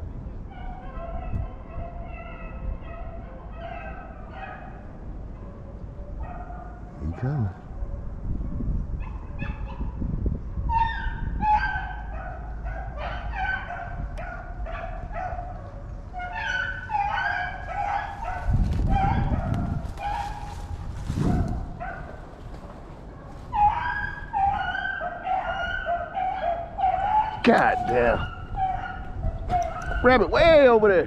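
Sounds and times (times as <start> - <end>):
dogs baying: 0.5 - 10.0, 10.6 - 30.6
low rumbling rustle: 17.5 - 24.8, 27.3 - 30.6.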